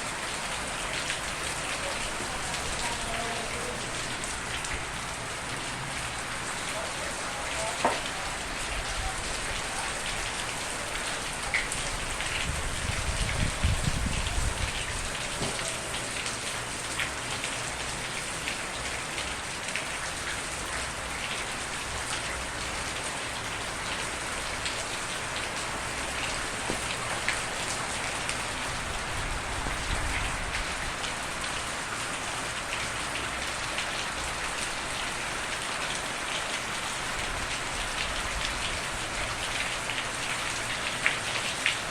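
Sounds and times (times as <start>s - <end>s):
steady rain falling: 0.0s - 41.9s.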